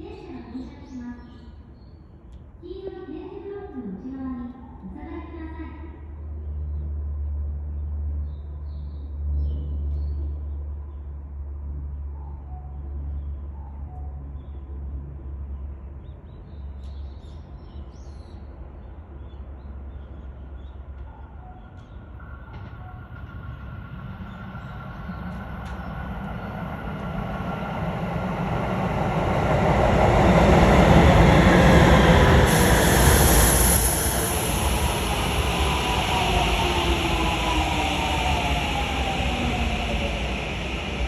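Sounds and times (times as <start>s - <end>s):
electric train rumbling: 17.4s - 41.0s
steady tone: 24.8s - 41.0s.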